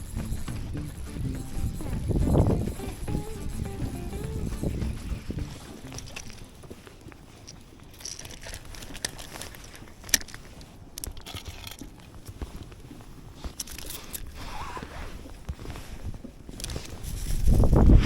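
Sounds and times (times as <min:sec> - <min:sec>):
clicks and crinkling handling noises: 0:05.5 - 0:17.5.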